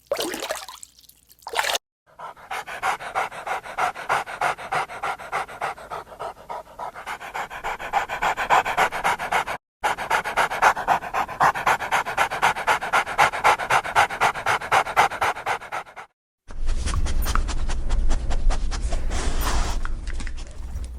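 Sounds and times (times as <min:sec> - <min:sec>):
dog panting: 0:02.1 - 0:20.9.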